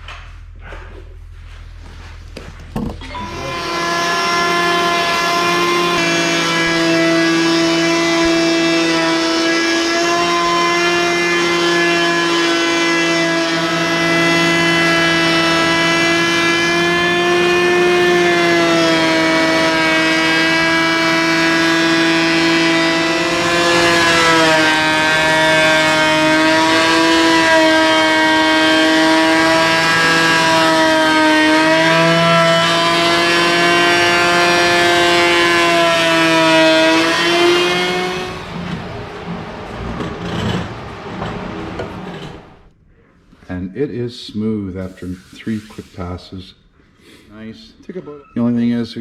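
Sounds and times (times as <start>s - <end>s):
electric hand planer cutting wood: 3.0s - 42.7s.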